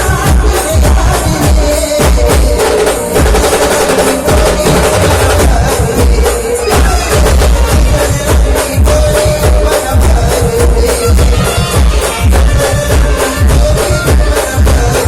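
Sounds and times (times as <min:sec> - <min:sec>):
deep bass drum beats: 0:00.0 - 0:15.0
brass band playing: 0:02.2 - 0:05.8, 0:10.4 - 0:14.6.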